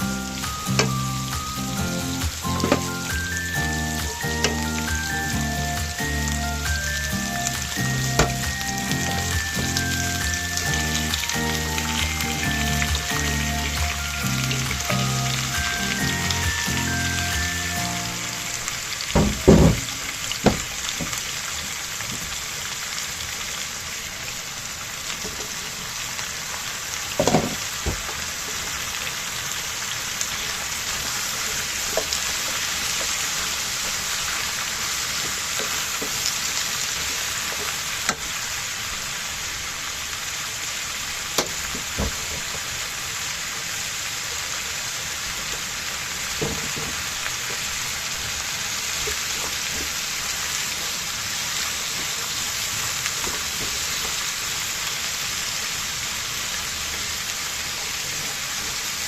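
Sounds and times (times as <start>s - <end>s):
food sizzling in a pan: 0.0s - 59.0s
knocks: 19.2s - 20.7s.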